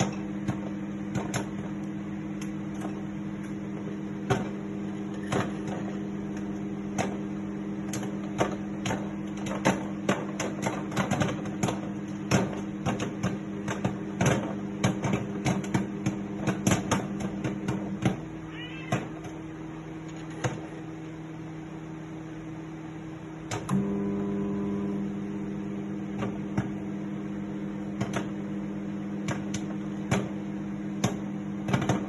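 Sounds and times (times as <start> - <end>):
microwave oven humming: 0.0 - 32.0.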